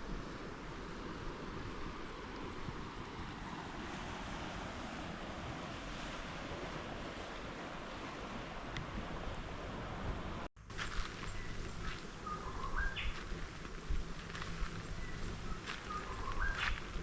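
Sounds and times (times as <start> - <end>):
ocean surf: 0.0 - 10.5.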